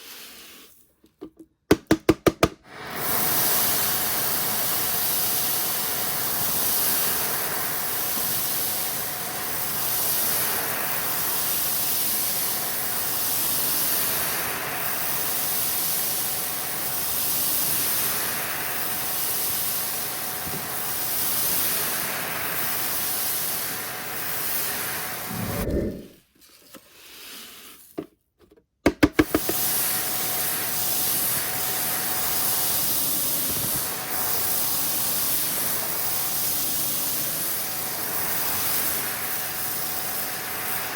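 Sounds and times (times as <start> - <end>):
vacuum cleaner running: 2.7 - 26.2, 29.1 - 40.9.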